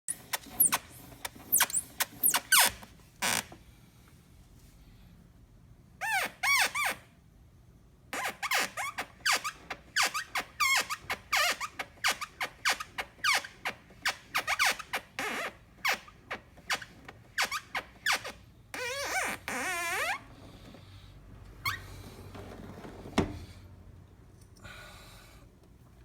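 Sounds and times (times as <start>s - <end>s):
plastic panel squeaking: 0.1s - 3.6s.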